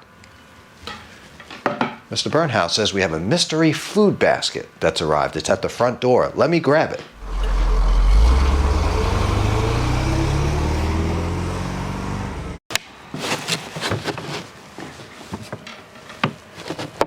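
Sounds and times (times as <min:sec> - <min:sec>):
engine accelerating: 0:07.2 - 0:12.6.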